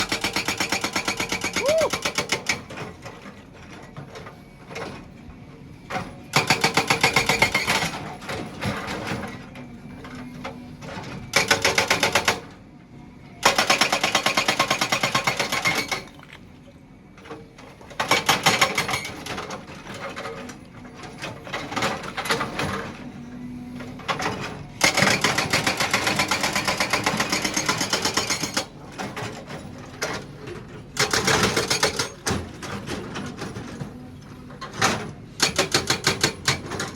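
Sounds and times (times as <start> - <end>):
hydraulic breaker hammering: 0.0 - 2.8, 24.8 - 28.7, 31.0 - 32.7, 35.4 - 36.9
excavator engine running: 0.0 - 36.9.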